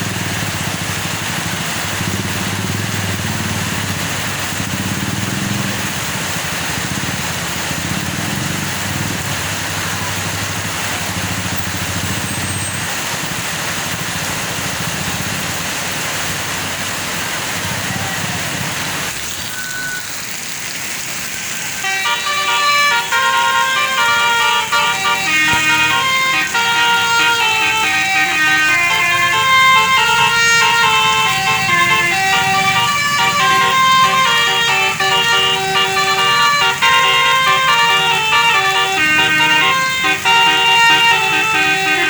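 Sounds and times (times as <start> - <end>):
heavy vehicle engine running: 0.0 - 42.0
road traffic: 0.0 - 42.0
bus musical air horn tune: 21.8 - 42.0.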